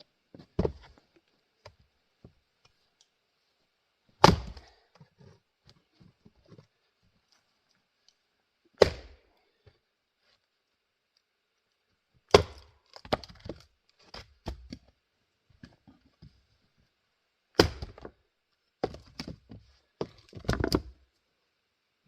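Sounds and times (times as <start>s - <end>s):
axe striking wood: 4.2s - 4.6s, 8.8s - 9.2s, 12.3s - 13.3s, 17.6s - 18.1s
wood crackling as it splits: 12.3s - 14.5s.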